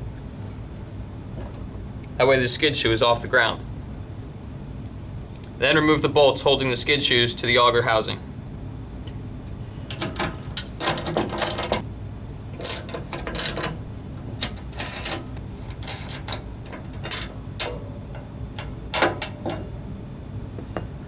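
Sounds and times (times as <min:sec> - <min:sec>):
metal clinks: 0:12.6 - 0:19.9.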